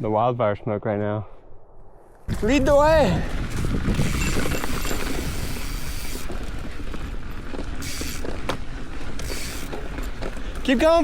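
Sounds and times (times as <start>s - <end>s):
bike tyres rolling on dirt: 2.0s - 11.0s
bike rattles and knocks: 3.3s - 10.6s.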